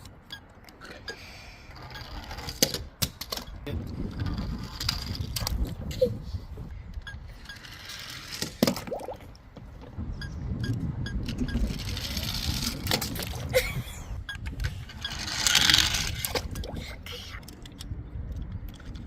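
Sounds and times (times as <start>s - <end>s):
toy vehicles rolling down ramp: 0.8s - 6.0s, 7.0s - 8.8s, 10.6s - 13.5s, 14.3s - 19.0s.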